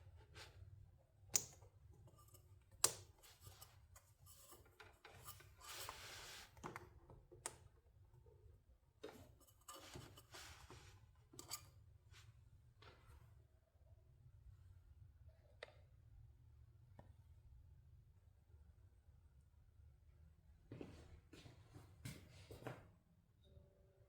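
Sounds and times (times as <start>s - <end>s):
rustling and scraping: 3.1s - 6.8s, 9.0s - 13.3s.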